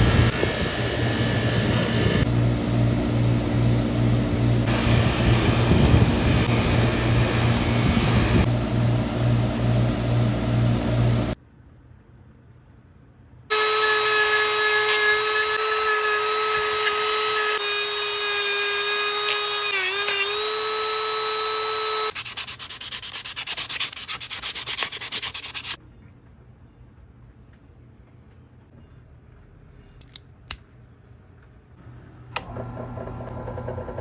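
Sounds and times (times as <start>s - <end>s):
power tool whining on metal: 0.0s - 2.3s, 4.6s - 8.5s, 13.5s - 22.1s
rapid scraping strokes: 22.1s - 25.8s.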